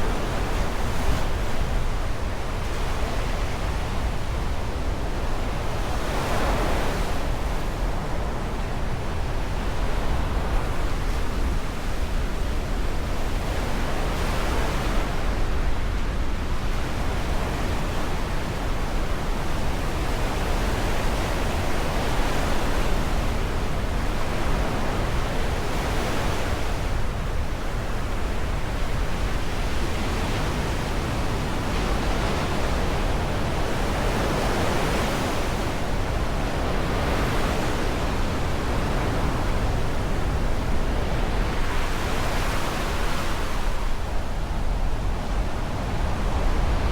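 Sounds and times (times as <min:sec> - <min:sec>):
waves breaking on shore: 0:19.6 - 0:46.9.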